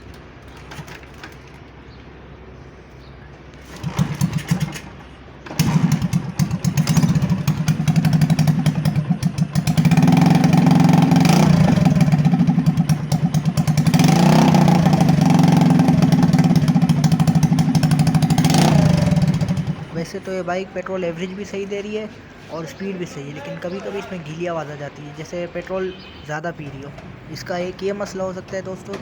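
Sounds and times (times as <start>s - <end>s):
motorcycle engine starting and revving: 3.6s - 20.3s.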